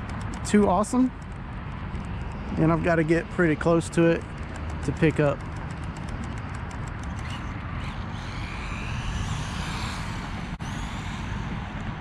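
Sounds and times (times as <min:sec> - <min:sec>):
electric motor whine: 0:07.1 - 0:12.0.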